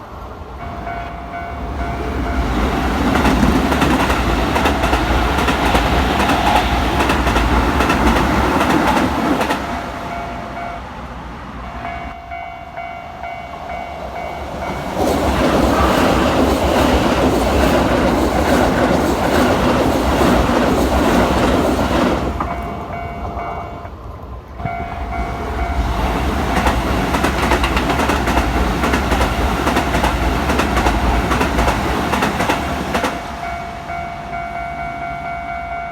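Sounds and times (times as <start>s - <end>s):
train wheels clattering over rail joints: 2.6s - 9.7s, 24.3s - 33.2s.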